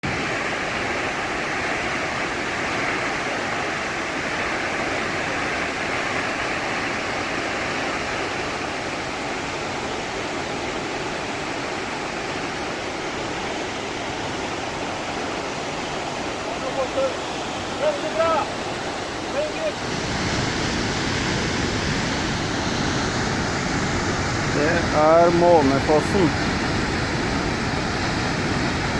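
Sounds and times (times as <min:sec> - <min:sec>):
rush of falling water: 0:00.0 - 0:28.9.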